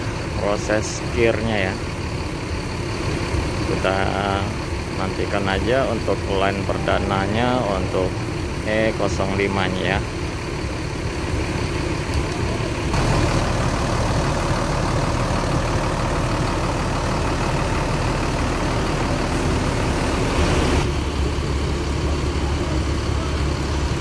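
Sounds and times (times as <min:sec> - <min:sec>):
broad noise: 0:00.0 - 0:24.0
diesel bus engine idling: 0:00.0 - 0:24.0.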